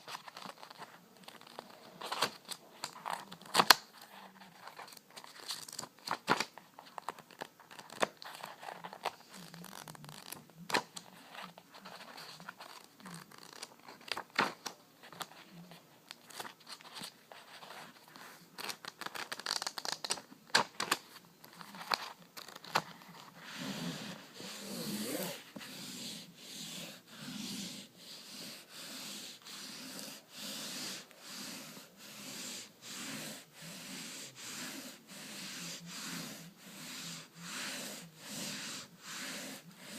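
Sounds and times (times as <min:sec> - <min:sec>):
crinkling handling noises: 0:00.0 - 0:25.7
back-and-forth rubbing strokes: 0:23.1 - 0:39.9.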